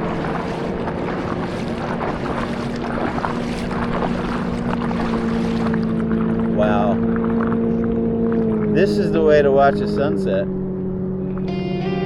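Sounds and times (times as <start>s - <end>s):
paddle strokes splashing: 0.0s - 8.8s
wind on microphone: 0.0s - 9.3s
water lapping: 0.0s - 11.5s
boat engine hum: 0.0s - 12.0s.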